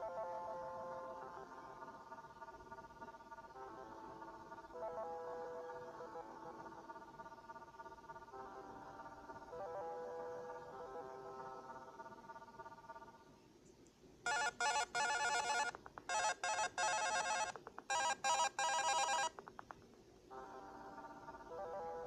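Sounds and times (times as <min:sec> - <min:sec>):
trilling electronic alarm ring: 0:14.3 - 0:19.3.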